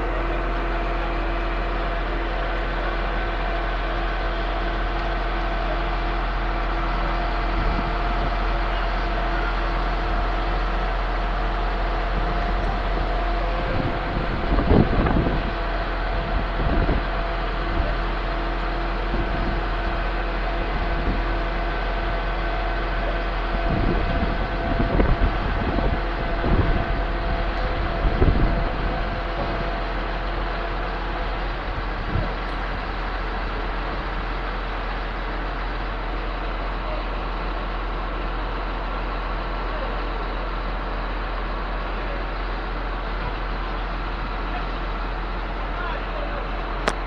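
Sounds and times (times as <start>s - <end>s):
concrete pump engine drone: 0.0s - 47.0s.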